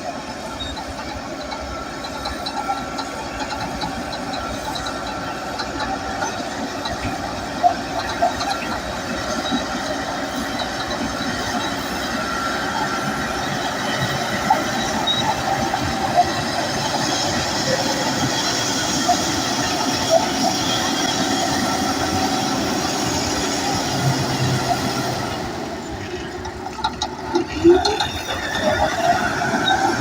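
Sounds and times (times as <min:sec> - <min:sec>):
diesel engine running: 0:00.0 - 0:30.0
steel tracks rattling: 0:00.0 - 0:30.0.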